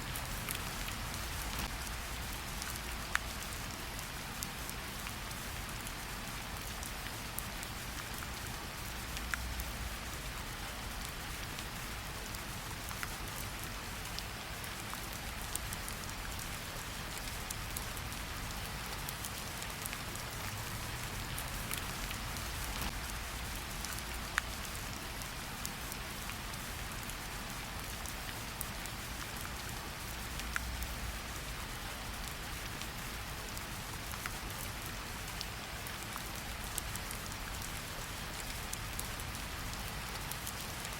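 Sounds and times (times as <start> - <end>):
steady rain hiss: 0.0 - 40.9
raindrops ticking: 0.1 - 4.0, 14.1 - 31.2.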